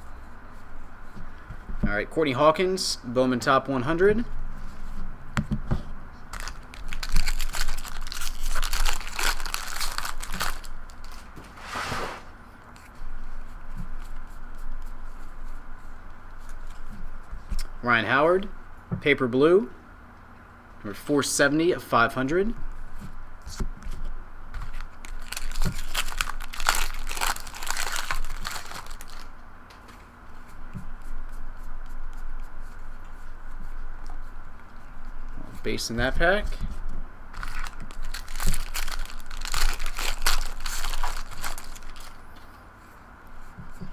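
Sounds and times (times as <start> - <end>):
foil wrapper crinkling: 6.3 - 11.3, 24.6 - 29.3, 37.3 - 42.2
trading cards rustling and clicking: 24.6 - 30.1, 37.3 - 42.5.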